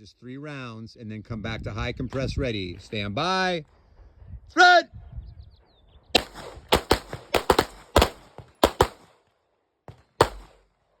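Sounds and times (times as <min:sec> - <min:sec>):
pistol shots: 0:06.2 - 0:09.2, 0:09.9 - 0:10.7.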